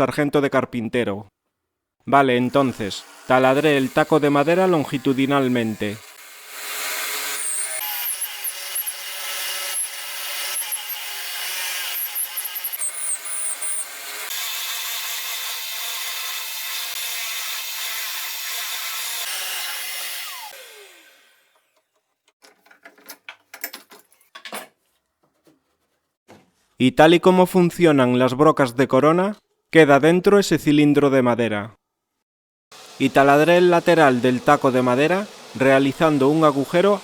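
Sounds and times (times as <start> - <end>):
drill press boring into wood: 2.5 - 14.4, 18.4 - 21.5.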